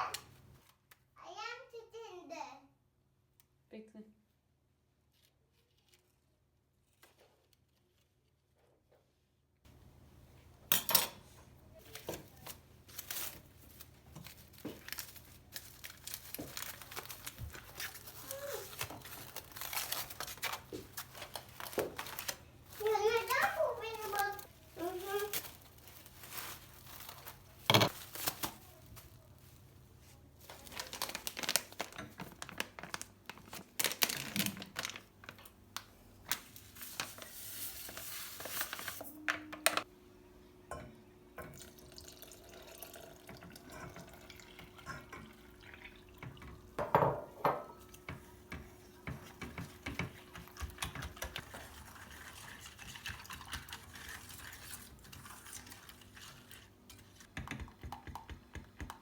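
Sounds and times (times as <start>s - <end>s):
water running from a tap: 41.5s - 46.6s.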